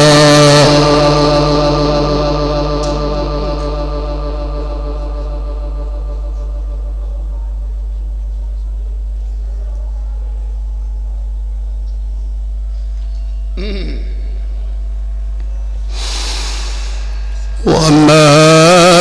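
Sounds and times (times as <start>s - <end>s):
sung note: 0.0s - 7.8s
electrical mains hum: 0.0s - 19.0s.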